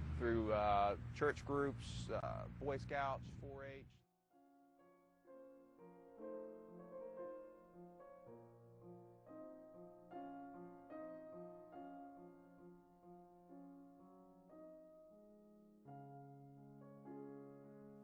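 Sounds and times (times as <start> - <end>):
soft piano music: 4.3 - 18.0.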